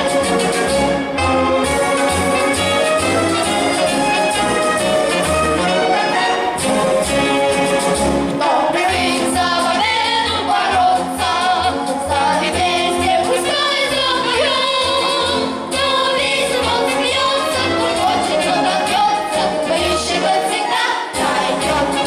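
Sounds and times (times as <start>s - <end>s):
instrumental music with bass beat: 0.0s - 11.4s
voices singing together: 0.0s - 22.0s.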